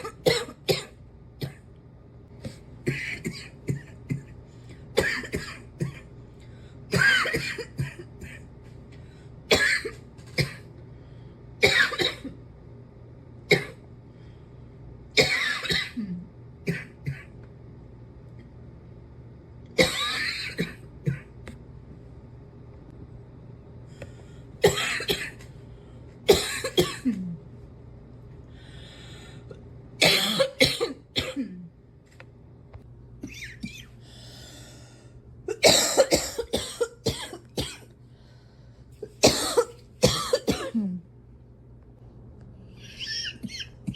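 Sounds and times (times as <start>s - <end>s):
person coughing: 0.0s - 1.7s, 2.5s - 6.1s, 6.9s - 8.5s, 9.5s - 10.7s, 11.6s - 12.4s, 15.2s - 17.3s, 19.8s - 21.4s, 24.6s - 25.4s, 26.3s - 27.4s, 30.0s - 31.7s, 33.2s - 34.0s, 35.5s - 37.9s, 39.0s - 41.1s.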